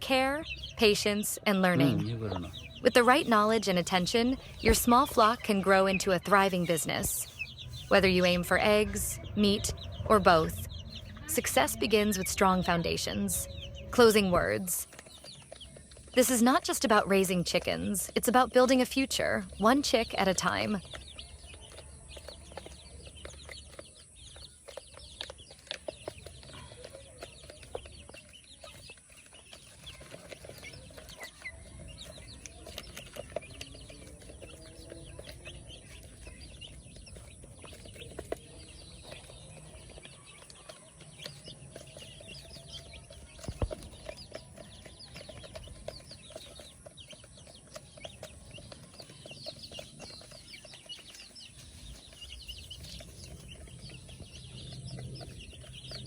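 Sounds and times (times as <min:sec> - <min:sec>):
chickens clucking: 0:00.0 - 0:56.0
small ticks and knocks: 0:20.8 - 0:56.0.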